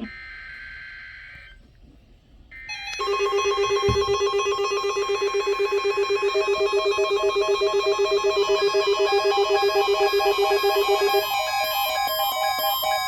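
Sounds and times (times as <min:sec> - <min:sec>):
telephone ringing with warbling trill: 0:02.7 - 0:13.0.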